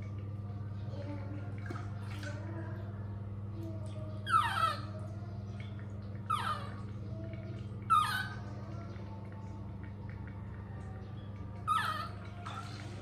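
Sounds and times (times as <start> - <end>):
steady low hum: 0.0 - 13.0
monkey calling: 4.2 - 5.0, 6.3 - 6.8, 7.9 - 8.4, 11.6 - 12.8.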